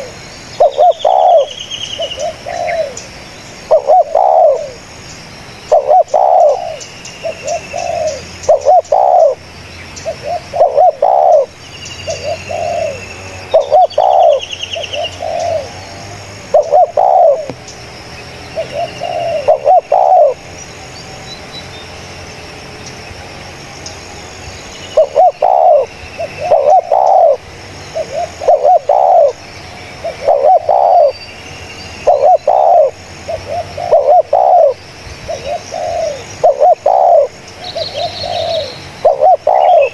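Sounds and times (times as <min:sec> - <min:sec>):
dove cooing: 0:00.0 - 0:04.8, 0:05.7 - 0:09.4, 0:10.0 - 0:17.6, 0:18.6 - 0:20.4, 0:25.0 - 0:29.4, 0:30.0 - 0:31.2, 0:32.0 - 0:39.9
small birds chirping: 0:00.0 - 0:39.9.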